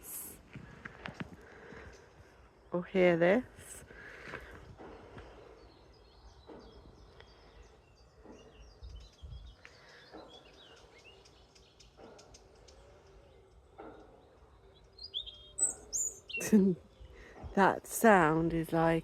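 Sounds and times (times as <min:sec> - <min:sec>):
faint birds chirping: 0:00.0 - 0:19.0.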